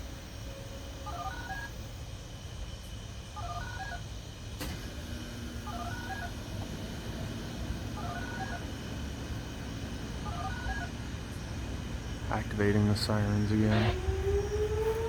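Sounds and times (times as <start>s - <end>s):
low steady hum: 0.0s - 15.0s
dual-tone beeps over radio: 13.6s - 14.0s.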